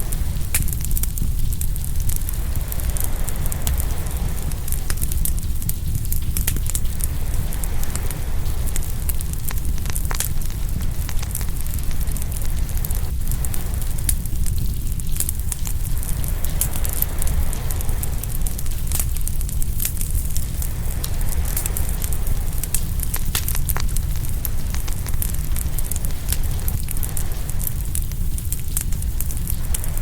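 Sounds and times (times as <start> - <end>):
fire crackling and popping: 0.0 - 30.0.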